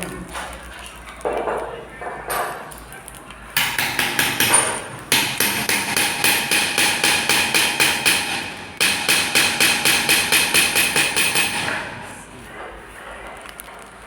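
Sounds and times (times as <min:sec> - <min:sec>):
punch machine tapping metal: 0:03.6 - 0:12.2.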